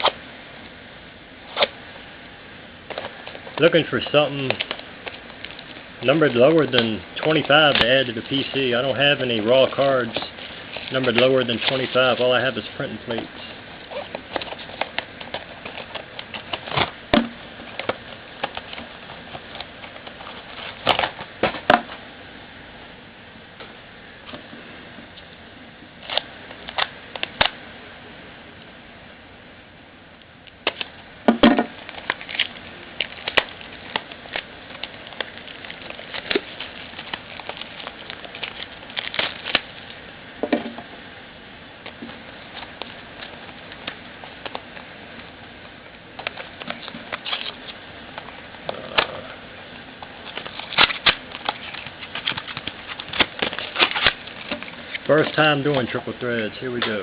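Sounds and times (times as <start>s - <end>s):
packaging crinkling and rustling: 2.9s - 21.9s, 30.6s - 40.1s, 41.8s - 57.0s.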